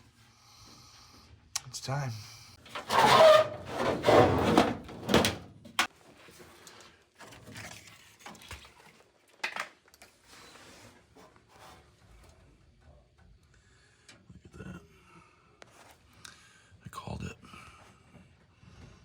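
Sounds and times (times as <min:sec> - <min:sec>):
metal panel scraping: 0:02.7 - 0:05.6.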